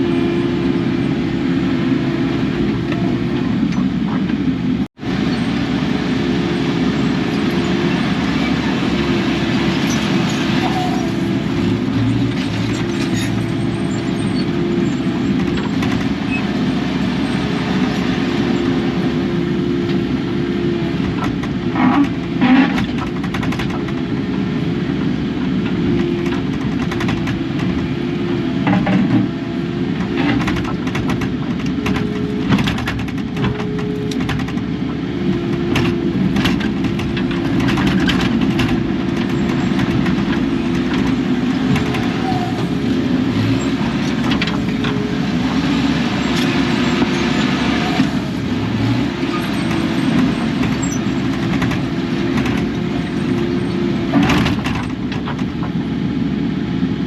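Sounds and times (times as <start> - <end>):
excavator diesel engine running: 0.0 - 57.0
knocks and clanks: 21.0 - 24.2, 25.6 - 27.9, 28.6 - 29.3, 30.0 - 42.8, 49.3 - 55.9.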